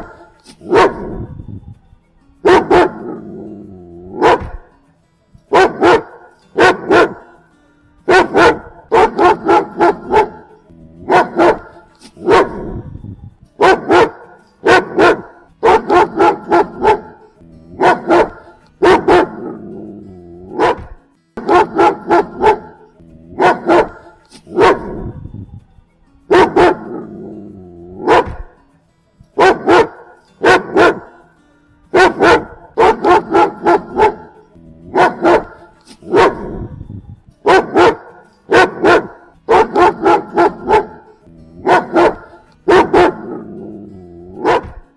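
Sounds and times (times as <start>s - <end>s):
dog barking: 0.0s - 1.4s, 2.4s - 3.2s, 4.1s - 4.7s, 5.5s - 7.4s, 8.1s - 12.9s, 13.6s - 17.2s, 17.8s - 19.7s, 20.5s - 25.2s, 26.3s - 27.2s, 28.0s - 28.6s, 29.4s - 31.2s, 31.9s - 36.8s, 37.4s - 43.6s, 44.3s - 44.9s.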